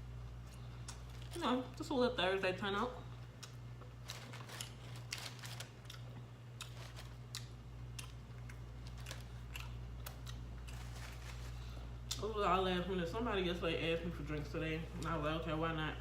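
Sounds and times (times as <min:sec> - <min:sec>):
steady low hum: 0:00.0 - 0:16.0
person chewing with mouth smacking: 0:05.8 - 0:10.9.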